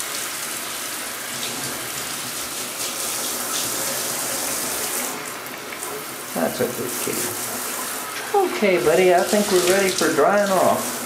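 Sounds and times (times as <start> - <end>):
tap water running into bathtub: 0.0 - 11.0
small water splashes: 8.9 - 11.0.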